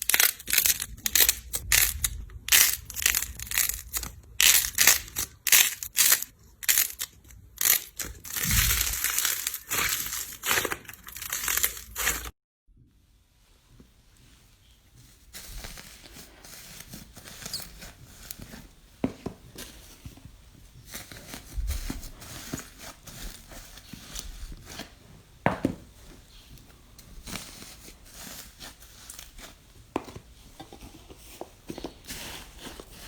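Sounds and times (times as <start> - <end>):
slime crackling and crinkling: 0.0 - 12.3, 15.0 - 18.7, 20.8 - 25.0.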